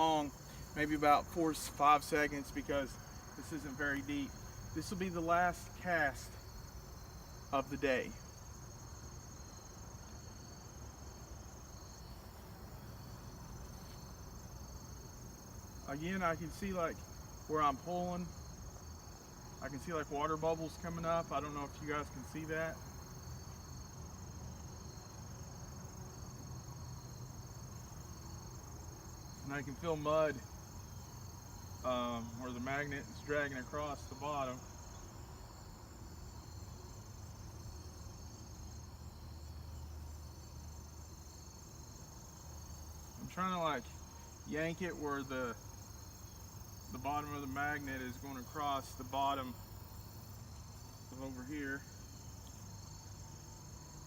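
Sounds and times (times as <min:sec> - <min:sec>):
insects trilling: 0:00.0 - 0:54.0.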